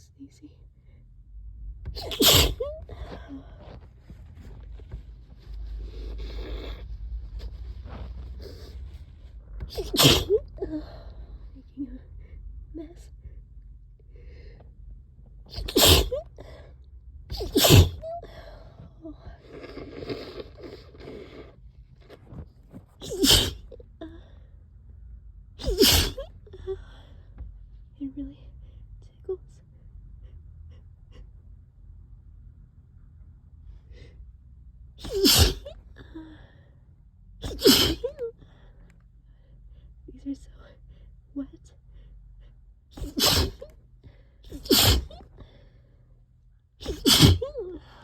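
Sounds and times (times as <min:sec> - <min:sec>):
person sneezing: 0:01.9 - 0:03.2, 0:09.7 - 0:10.8, 0:15.5 - 0:16.3, 0:17.3 - 0:18.0, 0:23.0 - 0:23.7, 0:25.6 - 0:26.3, 0:35.0 - 0:35.7, 0:37.4 - 0:38.2, 0:43.0 - 0:43.7, 0:44.5 - 0:45.2, 0:46.8 - 0:47.7.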